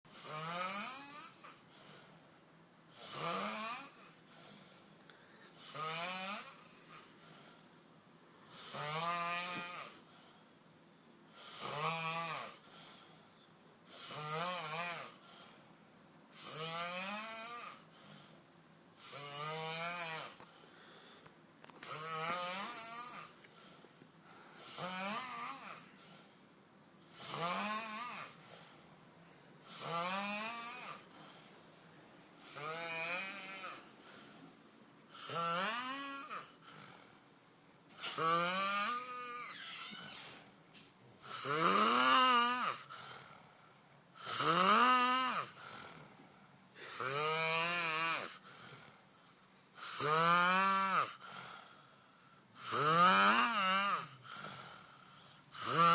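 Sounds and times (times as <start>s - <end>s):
man snoring loudly: 0.1s - 1.4s, 3.0s - 4.0s, 5.6s - 6.9s, 8.5s - 10.0s, 11.4s - 12.6s, 14.0s - 15.2s, 16.4s - 17.9s, 19.0s - 20.4s, 21.8s - 23.4s, 24.6s - 25.9s, 27.2s - 28.4s, 29.7s - 31.1s, 32.4s - 33.9s, 35.2s - 36.6s, 38.0s - 39.6s, 41.3s - 42.9s, 44.2s - 46.0s, 46.9s - 48.4s, 49.8s - 51.2s, 52.6s - 55.9s.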